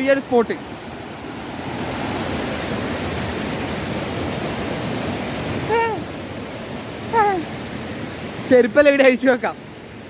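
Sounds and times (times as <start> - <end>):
waterfall rushing water: 0.0 - 10.0
short voiced call: 5.6 - 6.1, 7.1 - 7.5.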